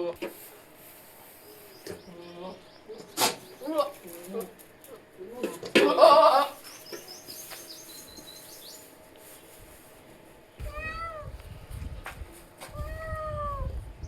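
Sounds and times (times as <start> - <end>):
cat meowing: 10.6 - 11.4, 12.7 - 13.8.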